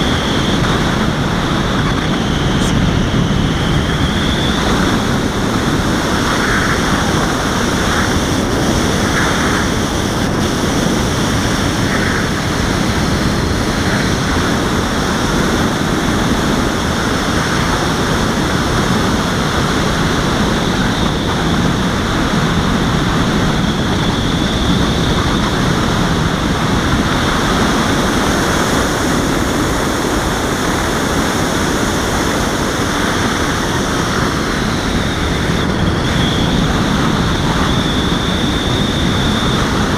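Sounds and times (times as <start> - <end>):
faint high whine: 0.0 - 39.9
wind noise: 0.0 - 39.9.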